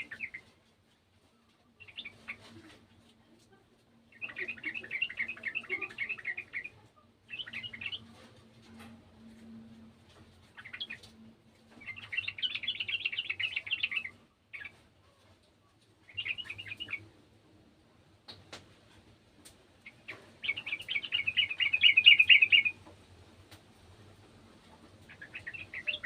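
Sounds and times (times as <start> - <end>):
bird chattering song: 0.0 - 0.4, 1.8 - 2.7, 4.1 - 8.1, 10.5 - 11.1, 11.8 - 14.7, 16.1 - 17.1, 19.8 - 22.8, 25.1 - 26.0.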